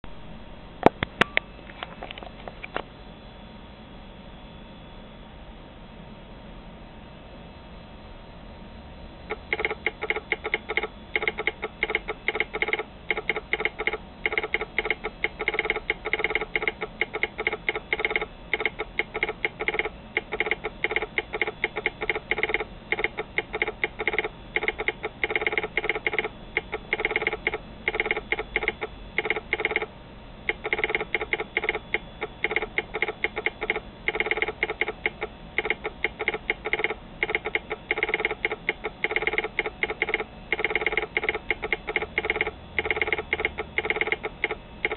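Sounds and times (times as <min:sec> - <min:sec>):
telegraph sounder clicking: 0:09.3 - 0:29.9, 0:30.5 - 0:44.9.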